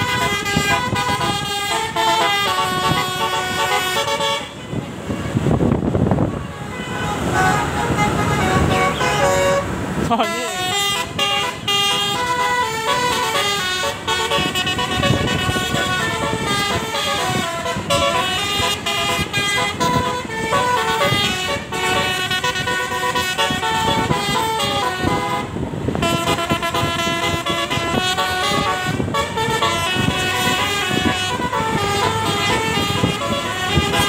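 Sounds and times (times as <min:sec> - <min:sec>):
musical air horn tune: 0:00.0 - 0:34.0.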